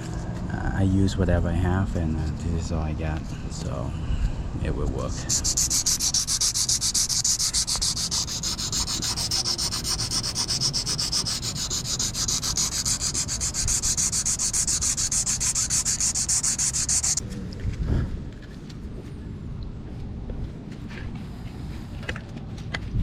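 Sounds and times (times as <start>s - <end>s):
sanding hiss: 5.2s - 17.2s.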